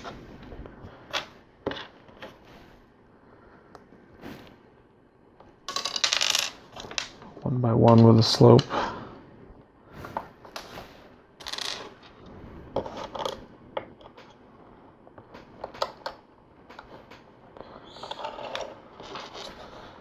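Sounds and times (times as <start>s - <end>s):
plastic pieces clicking and clattering: 5.7s - 7.3s, 11.4s - 12.1s.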